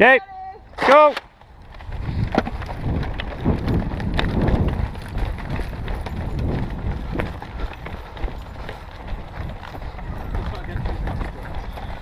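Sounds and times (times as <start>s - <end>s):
footsteps of people running: 1.3s - 12.0s.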